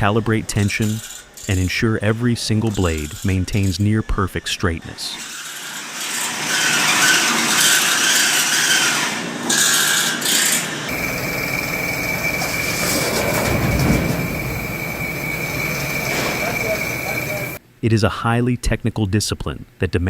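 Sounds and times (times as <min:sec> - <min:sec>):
high grinding hiss: 0:10.9 - 0:17.6
low machine rumble: 0:10.9 - 0:17.6
steady high whine: 0:10.9 - 0:17.6.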